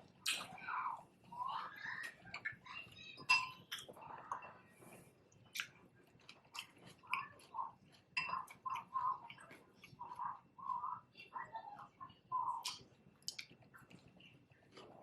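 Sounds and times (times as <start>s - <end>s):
chewing and mouth sounds: 0.0s - 15.0s
utensils clinking on dishes: 3.3s - 3.6s.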